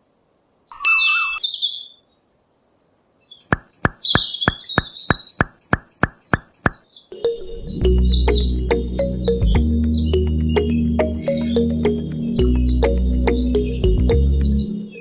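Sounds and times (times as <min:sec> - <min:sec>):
birds chirping: 0:03.2 - 0:15.0
sharp evenly spaced clicks: 0:03.5 - 0:14.6.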